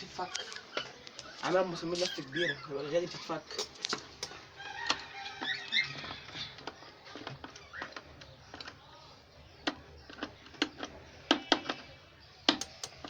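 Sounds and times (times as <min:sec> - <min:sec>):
clicks and knocks on wood: 0:03.5 - 0:04.4, 0:12.5 - 0:13.0.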